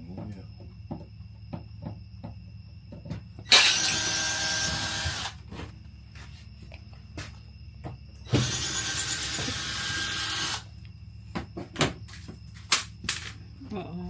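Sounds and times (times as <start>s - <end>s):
power drill driving screws: 3.5s - 5.4s, 8.3s - 10.7s.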